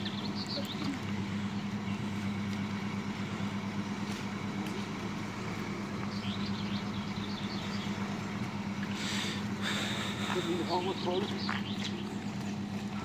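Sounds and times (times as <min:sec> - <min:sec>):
motor humming: 0:00.0 - 0:13.0.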